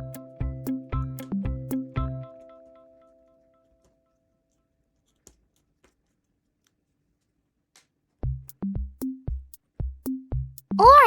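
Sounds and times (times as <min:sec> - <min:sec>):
faint handling clicks and rustles: 0:02.4 - 0:08.2.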